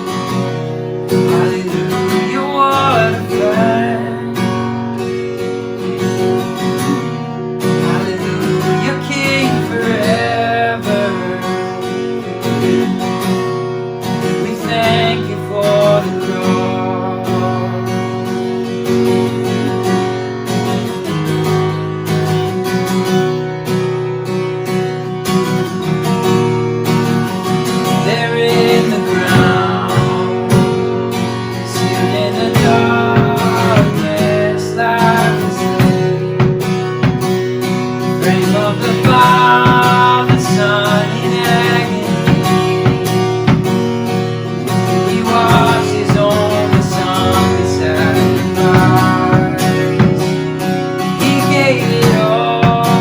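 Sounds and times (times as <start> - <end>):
acoustic guitar strumming chords: 0.0 - 53.0
held melody notes: 27.2 - 53.0.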